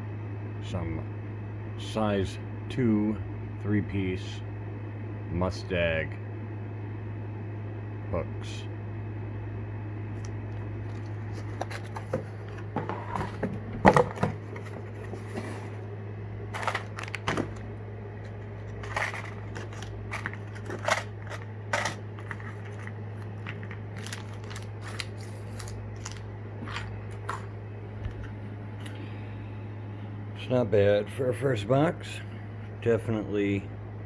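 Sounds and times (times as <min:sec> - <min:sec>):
steady low hum: 0:00.0 - 0:34.0
plastic packaging crinkling: 0:10.2 - 0:12.7, 0:16.5 - 0:27.6.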